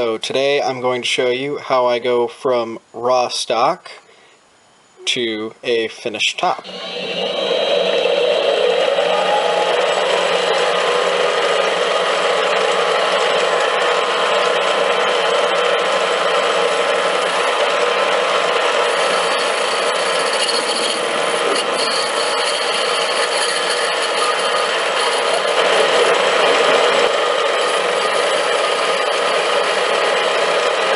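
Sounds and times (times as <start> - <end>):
power tool cutting metal: 6.6 - 30.9.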